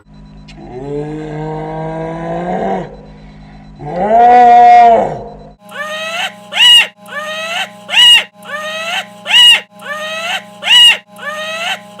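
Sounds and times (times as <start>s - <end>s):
scream-like cry: 4.0s - 12.0s.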